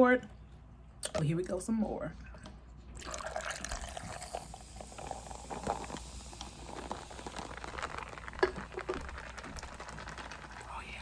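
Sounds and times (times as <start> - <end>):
soda fizzing in a glass: 3.0 - 11.0.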